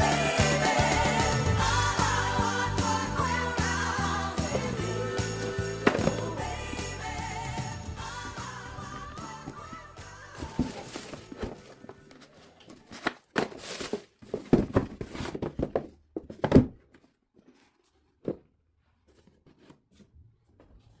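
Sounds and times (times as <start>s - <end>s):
cardboard and paper rustling: 8.9s - 21.0s.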